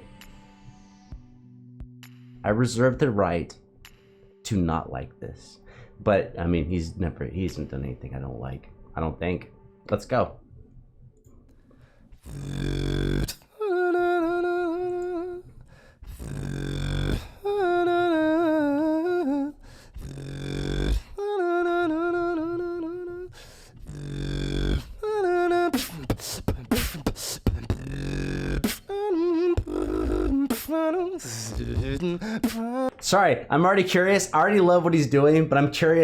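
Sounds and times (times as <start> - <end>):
beatboxing: 12.2 - 13.5, 16.1 - 18.6, 20.0 - 21.2, 23.8 - 33.0.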